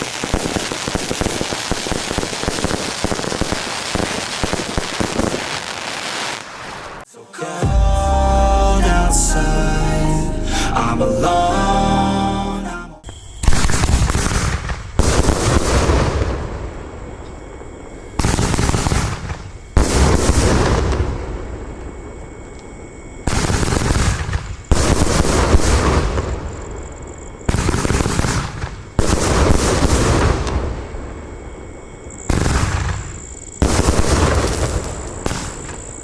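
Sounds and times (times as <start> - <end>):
firework bangs: 0.0 - 7.0, 13.4 - 21.8, 27.5 - 30.9, 32.3 - 36.0
firework crackle: 0.0 - 7.1, 13.4 - 21.8, 23.2 - 26.4, 27.5 - 30.9, 32.3 - 36.0.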